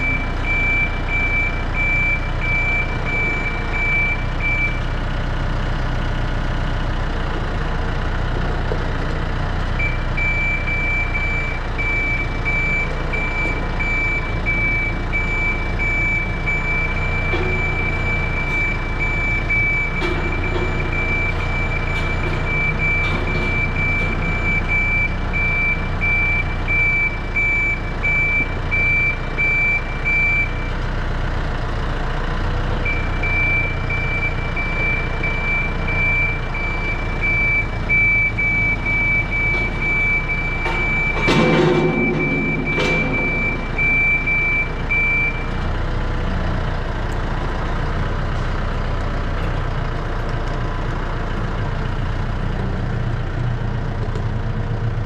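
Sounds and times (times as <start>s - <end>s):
back-up alarm beeping: 0.0s - 5.0s, 9.8s - 30.8s, 32.7s - 46.0s
tractor engine running: 0.0s - 55.0s.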